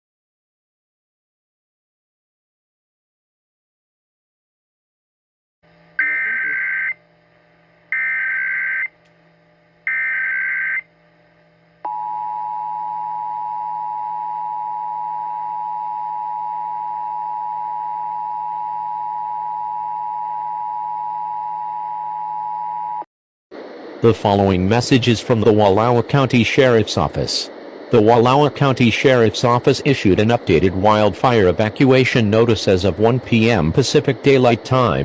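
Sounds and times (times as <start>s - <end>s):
two-tone attention signal: 6.0s - 7.0s.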